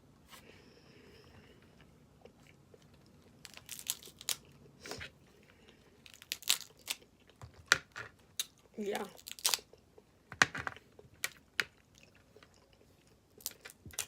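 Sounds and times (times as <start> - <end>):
crab shell crunching: 2.2 - 4.7, 5.5 - 14.0.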